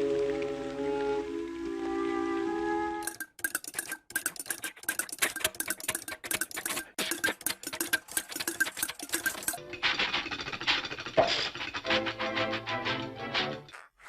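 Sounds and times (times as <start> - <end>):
rapid ringing clicks and taps: 3.0 - 9.6.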